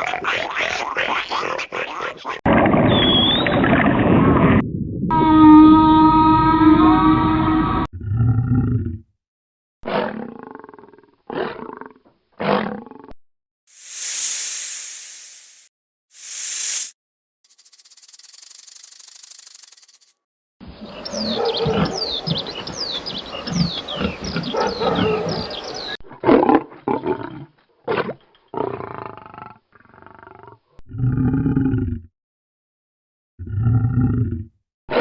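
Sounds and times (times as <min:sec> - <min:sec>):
quick falling chirps: 0:17.5 - 0:20.1
deep roar-like call: 0:20.8 - 0:26.0
rhythmic rasping animal call: 0:20.8 - 0:26.0
short animal calls: 0:20.9 - 0:26.0.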